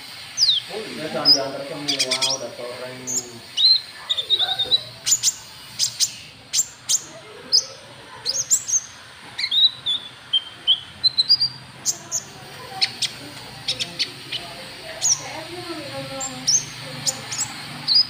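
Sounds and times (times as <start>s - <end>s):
bird chirping and clicking: 3.6s - 7.1s, 8.3s - 15.3s, 16.2s - 18.0s
bird whistled notes: 8.3s - 11.6s, 16.2s - 18.0s.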